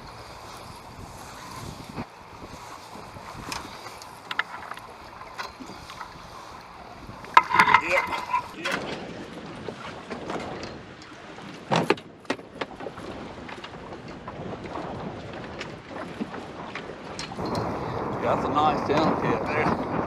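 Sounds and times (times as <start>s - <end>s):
wind rushing over microphone: 0.0s - 11.5s, 12.6s - 20.0s
clicks and knocks: 7.2s - 8.9s.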